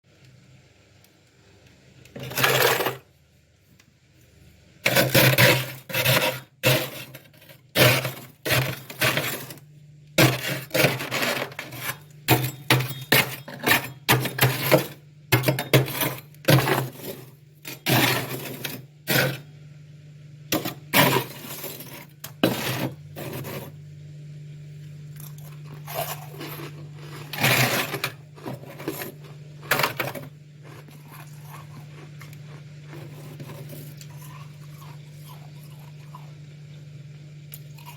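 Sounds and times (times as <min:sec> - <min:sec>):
low steady hum: 0:00.1 - 0:37.9
frost being chewed crunches: 0:24.8 - 0:27.5, 0:30.5 - 0:36.8.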